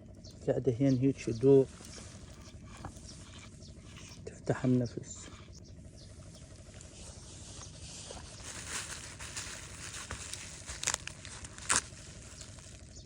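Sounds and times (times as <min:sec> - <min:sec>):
plastic bag crinkling: 0:08.2 - 0:13.0
plastic bag snaps: 0:08.7 - 0:12.5.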